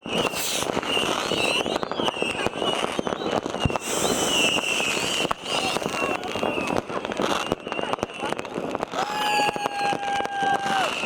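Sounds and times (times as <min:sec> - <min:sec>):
high wavering whistles: 0:00.0 - 0:06.8
fireworks and firecrackers banging: 0:00.0 - 0:11.0.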